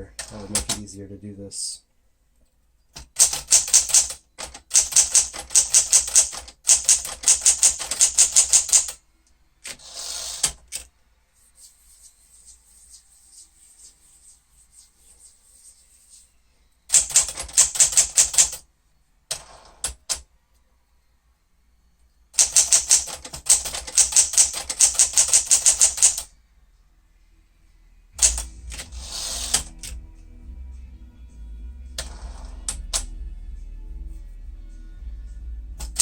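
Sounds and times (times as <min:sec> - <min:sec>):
manual typewriter typing: 0:00.2 - 0:00.9, 0:03.0 - 0:09.0, 0:09.6 - 0:10.9, 0:16.9 - 0:18.6, 0:19.3 - 0:20.2, 0:22.4 - 0:26.3, 0:28.2 - 0:30.0, 0:35.8 - 0:36.0
longer mechanical sound: 0:28.1 - 0:34.3.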